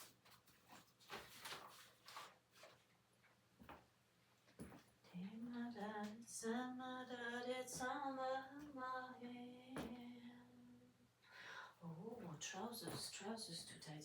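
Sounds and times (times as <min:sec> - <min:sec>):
person singing a slow tune: 0:05.1 - 0:11.1.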